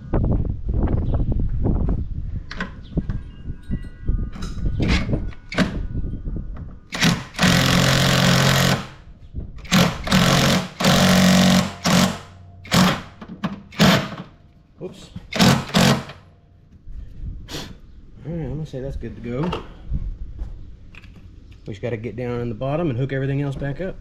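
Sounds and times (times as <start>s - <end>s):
impact wrench hammering: 6.9s - 9.0s, 9.6s - 14.3s, 15.3s - 16.2s
handling clicks and knocks: 12.7s - 16.2s.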